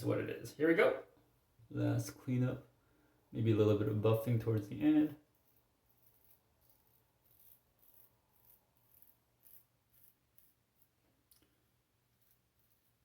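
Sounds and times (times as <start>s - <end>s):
razor scraping stubble: 5.3s - 11.0s.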